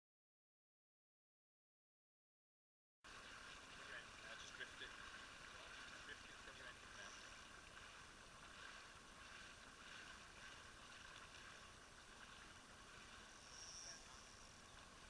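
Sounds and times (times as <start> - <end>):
faint steady hiss: 3.1 - 15.0.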